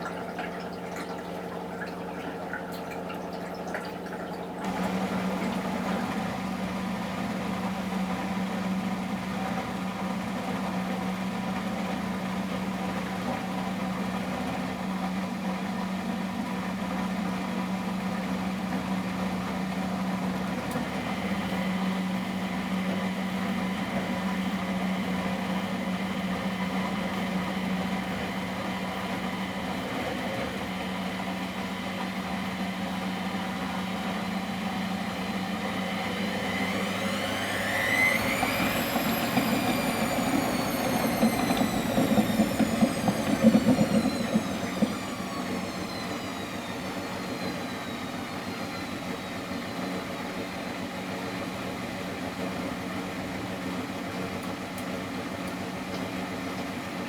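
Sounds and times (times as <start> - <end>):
water trickling and dripping: 0.0 - 4.7
washing machine motor humming: 0.0 - 57.0.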